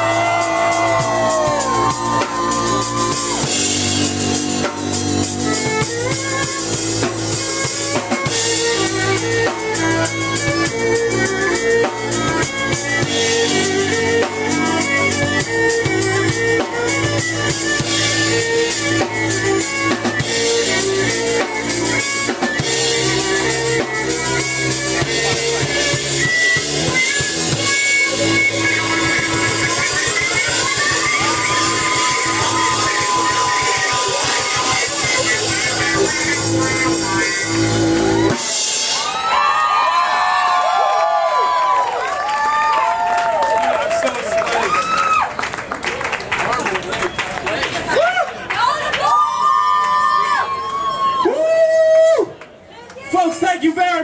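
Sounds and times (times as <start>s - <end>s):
violin: 0.0s - 39.1s
keyboard: 0.0s - 39.8s
drum kit beat: 0.0s - 41.7s.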